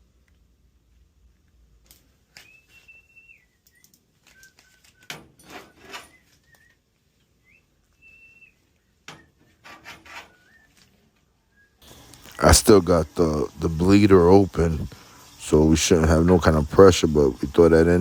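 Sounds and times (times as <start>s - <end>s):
thin whistle-like tones: 2.3s - 5.1s, 6.0s - 9.3s, 10.3s - 12.1s
probe rubbing and scraping in fitting: 9.4s - 10.7s.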